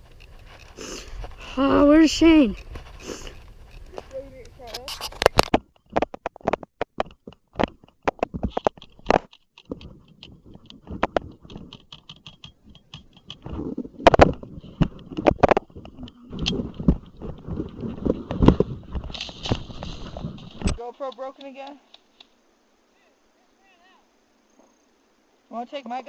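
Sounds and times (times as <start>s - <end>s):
footsteps crunching on dry ground: 0.0s - 5.3s, 13.5s - 22.2s.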